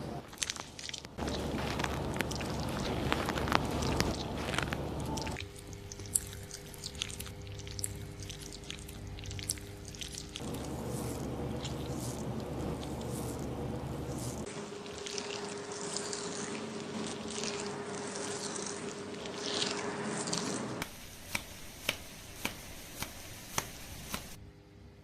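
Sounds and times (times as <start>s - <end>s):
wet scrubbing of lathered hair: 0.3s - 24.4s.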